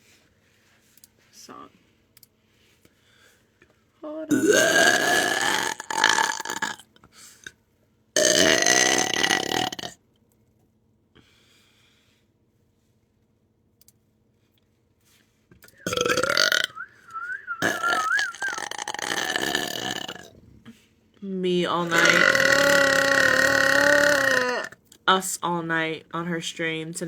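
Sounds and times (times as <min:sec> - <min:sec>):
person belching: 0:04.3 - 0:06.9, 0:08.2 - 0:10.0, 0:15.8 - 0:20.5, 0:21.7 - 0:24.8.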